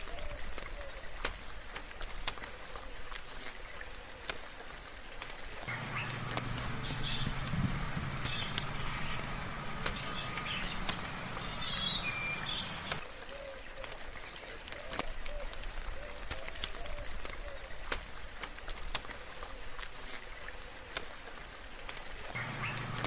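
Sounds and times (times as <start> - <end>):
light rain: 0.0 - 23.0
raindrops ticking: 0.0 - 23.0
birds chirping: 5.6 - 13.0, 22.3 - 23.0
low hum: 5.7 - 13.0.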